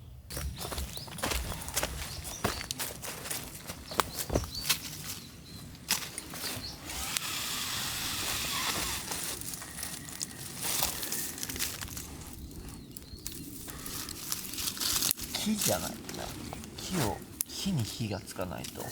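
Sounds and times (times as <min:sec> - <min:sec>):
bonfire crackling and snapping: 0:08.4 - 0:18.9.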